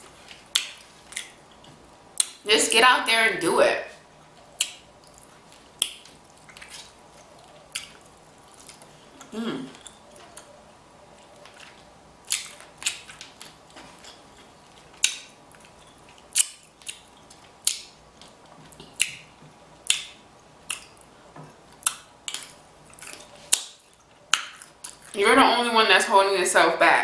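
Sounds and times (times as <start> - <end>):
wet chewing clicks and smacks: 4.3 - 10.5, 11.2 - 21.1, 21.8 - 25.2.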